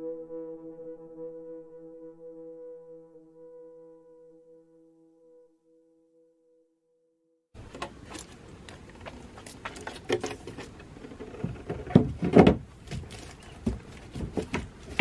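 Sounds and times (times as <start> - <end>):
knocks clicks and thumps: 7.6 - 15.0.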